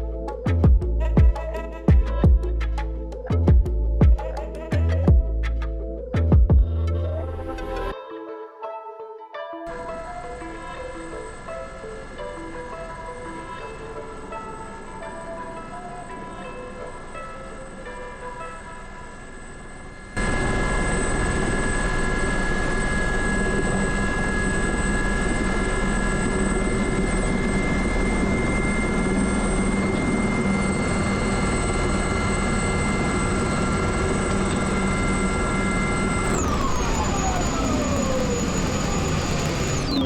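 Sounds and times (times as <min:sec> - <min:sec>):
helicopter turbine whine: 0:09.7 - 0:40.0.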